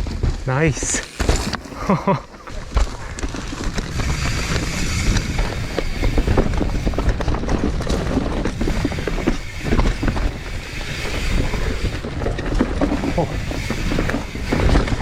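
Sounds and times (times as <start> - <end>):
wind rumbling on microphone: 0.0 - 15.0
bike rattling and knocking: 0.1 - 15.0
tyres grinding over soil: 0.6 - 5.4.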